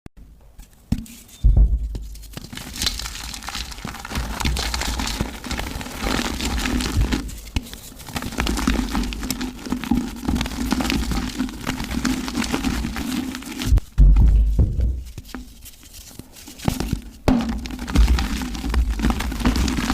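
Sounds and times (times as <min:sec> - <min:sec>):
mud crunching and crackling: 0:00.7 - 0:19.9
heavy thud: 0:01.4 - 0:02.2, 0:13.7 - 0:15.1.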